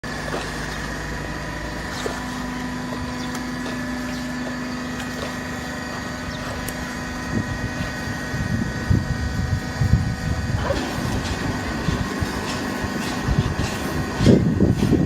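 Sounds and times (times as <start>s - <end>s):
baling press motor humming: 0.0s - 15.0s.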